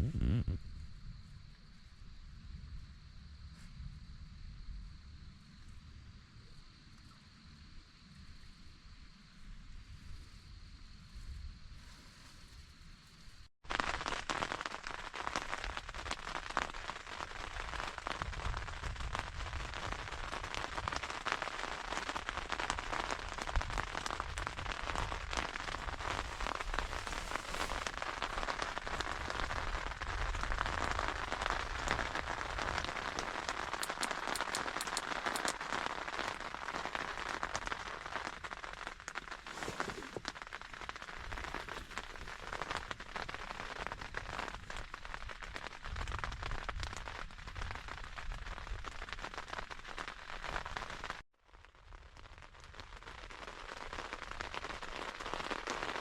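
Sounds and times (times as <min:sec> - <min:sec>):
heavy rain on a tent: 0:13.6 - 0:56.0.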